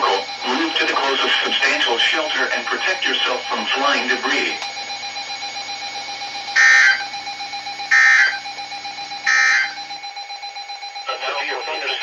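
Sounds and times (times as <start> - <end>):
harsh digital tone bursts: 6.6 - 7.0, 7.9 - 8.4, 9.3 - 9.8.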